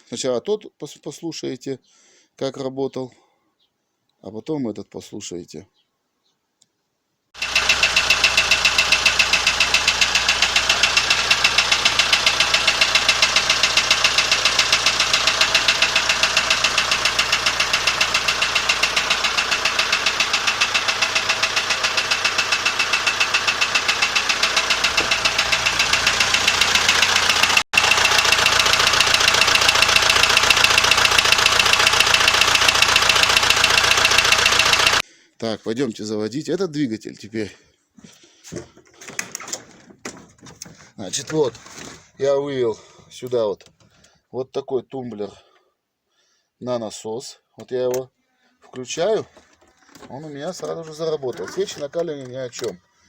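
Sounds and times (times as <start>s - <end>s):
diesel engine idling with knock: 7.4s - 35.0s.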